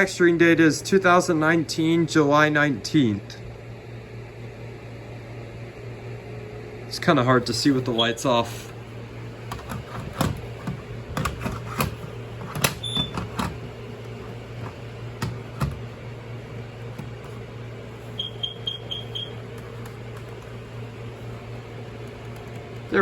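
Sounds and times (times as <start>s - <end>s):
steady low hum: 0.0s - 23.0s
short high electronic beeps: 18.2s - 19.3s.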